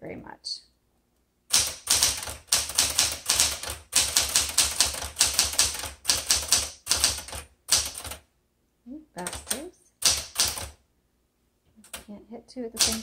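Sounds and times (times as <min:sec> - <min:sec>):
manual typewriter key strikes: 0:01.5 - 0:08.2, 0:09.2 - 0:10.7, 0:12.8 - 0:13.0.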